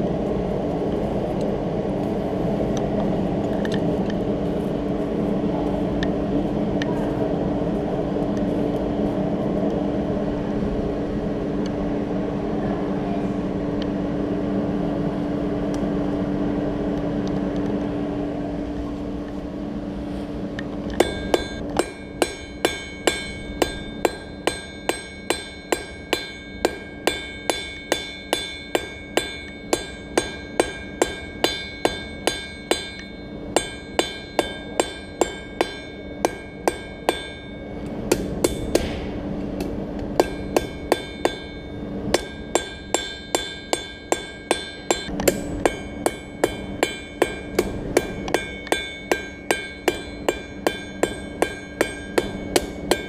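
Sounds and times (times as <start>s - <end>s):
hammer ringing on anvil: 21.0s - 39.1s, 40.2s - 53.0s.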